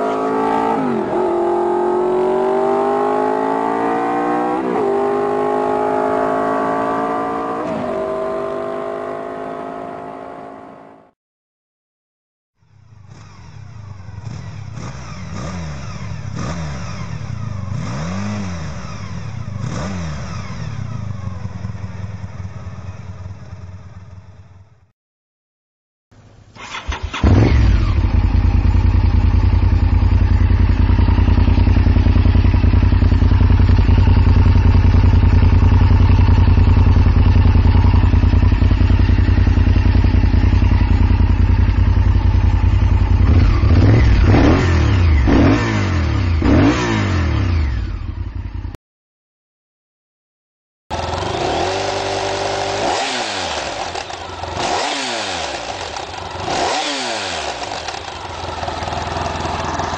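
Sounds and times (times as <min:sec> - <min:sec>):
motorcycle engine revving: 0:00.0 - 0:11.2, 0:12.6 - 0:24.9, 0:26.6 - 0:48.8, 0:50.9 - 0:59.9
motorcycle engine running: 0:12.6 - 0:24.9, 0:26.7 - 0:48.8, 0:50.9 - 0:59.9.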